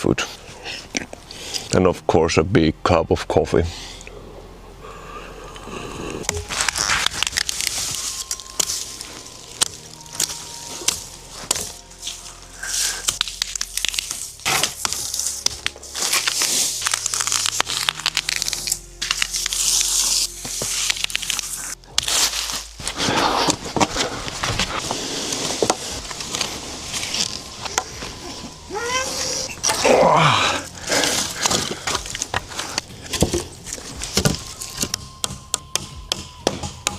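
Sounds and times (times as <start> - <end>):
soft background music: 0.0 - 36.9
crinkling and clicking handling: 6.3 - 28.5, 30.9 - 35.0.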